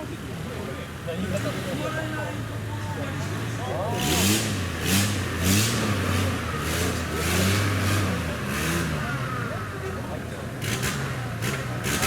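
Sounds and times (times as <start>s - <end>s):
car engine revving: 3.2s - 12.0s.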